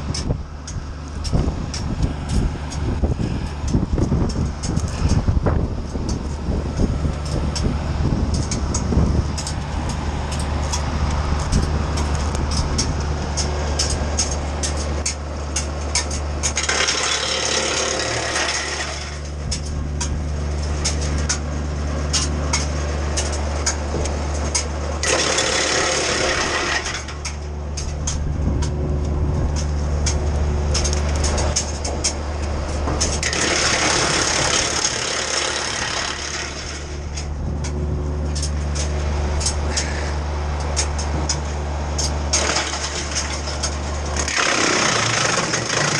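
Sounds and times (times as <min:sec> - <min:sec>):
wood chipper engine running: 0:00.0 - 0:45.9
crackle of wood being chipped: 0:03.6 - 0:45.9.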